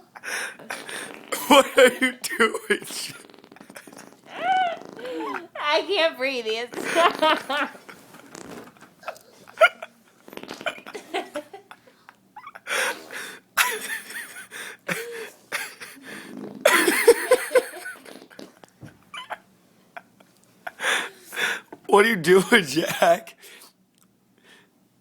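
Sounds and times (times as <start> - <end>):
toddler blowing raspberries: 2.7 - 5.5
woman laughing breathlessly: 4.3 - 5.6, 6.8 - 7.9, 10.9 - 16.1.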